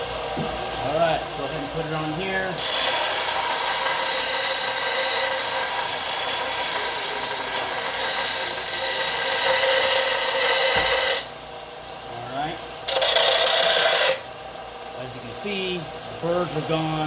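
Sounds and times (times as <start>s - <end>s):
belt sander grinding steel: 0.8s - 11.3s, 12.8s - 14.3s.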